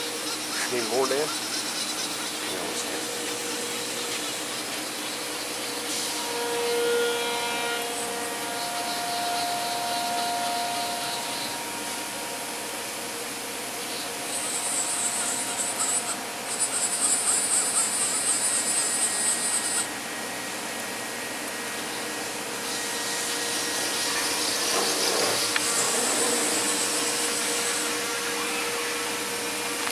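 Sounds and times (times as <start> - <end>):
high-pitched rhythmic chatter: 0.0 - 5.6
cnc router whirring hum: 0.0 - 29.9.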